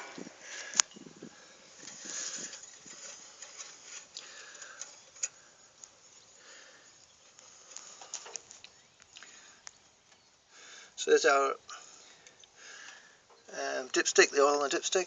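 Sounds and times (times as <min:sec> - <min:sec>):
faint handling clicks and rustling: 0:01.7 - 0:10.3.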